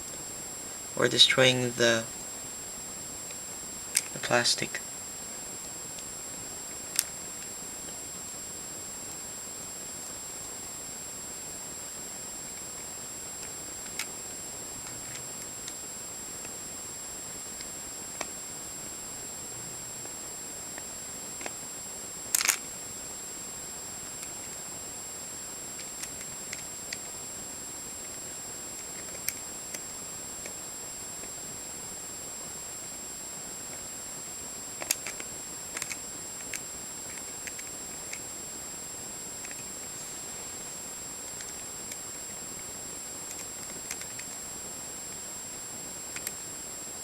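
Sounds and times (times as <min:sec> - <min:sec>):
steady hiss: 0:00.0 - 0:47.0
plastic puzzle pieces clicking: 0:22.4 - 0:22.6, 0:34.8 - 0:35.2, 0:35.8 - 0:37.7.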